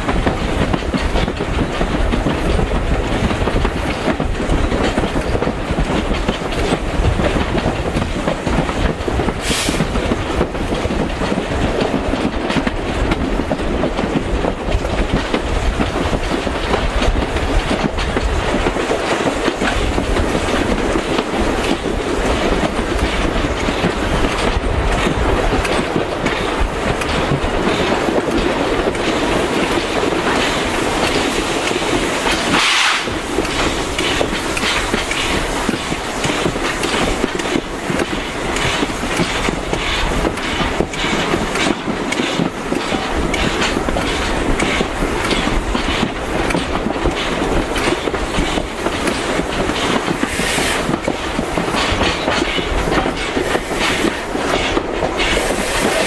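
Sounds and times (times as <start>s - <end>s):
train rumbling: 0.0s - 56.0s
wheels clicking over rail joints: 0.0s - 56.0s
high steam hiss: 9.2s - 10.4s, 25.2s - 56.0s.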